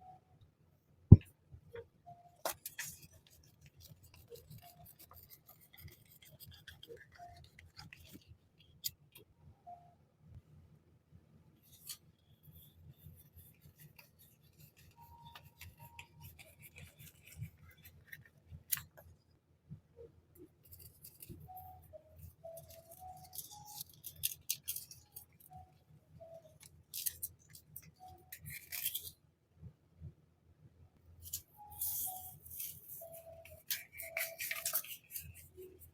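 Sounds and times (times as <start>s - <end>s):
plastic packaging crinkling: 31.8s - 35.8s.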